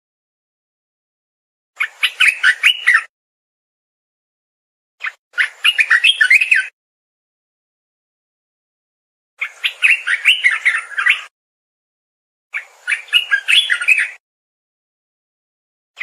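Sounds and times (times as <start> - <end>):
bird singing warbling phrases: 1.8 - 3.1, 5.0 - 6.8, 9.4 - 11.3, 12.5 - 14.2.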